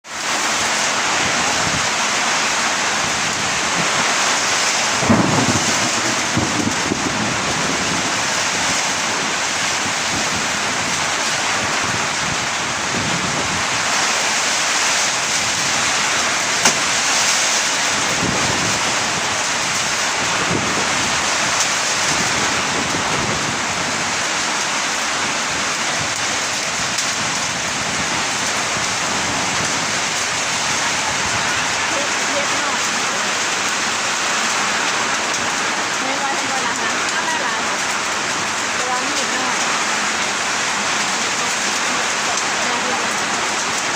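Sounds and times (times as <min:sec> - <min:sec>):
gusty wind: 0:00.0 - 0:43.9
heavy rain pouring: 0:00.0 - 0:43.9
sharp knock: 0:16.6 - 0:16.9.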